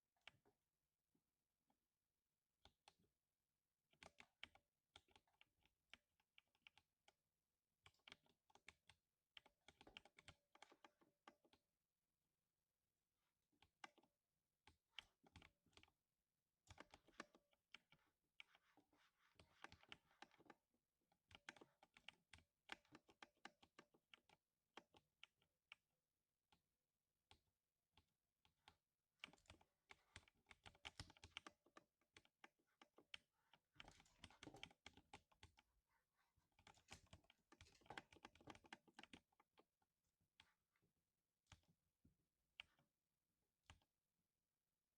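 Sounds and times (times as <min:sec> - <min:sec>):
mechanical keyboard typing: 0:28.6 - 0:35.7, 0:36.5 - 0:39.7.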